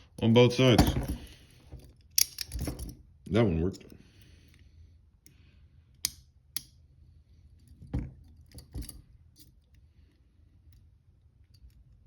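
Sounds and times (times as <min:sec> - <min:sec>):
handcuffs clicking and knocking: 0:00.6 - 0:03.0, 0:06.0 - 0:06.8.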